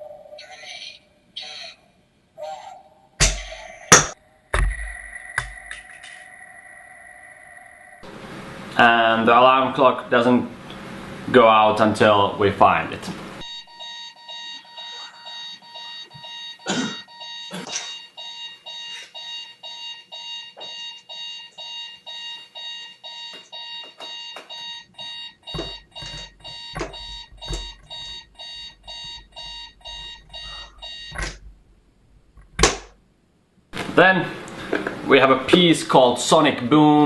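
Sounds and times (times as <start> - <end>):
electronic alarm pulsing: 3.4 - 9.5, 13.4 - 31.4
loud knocks: 25.5 - 28.2.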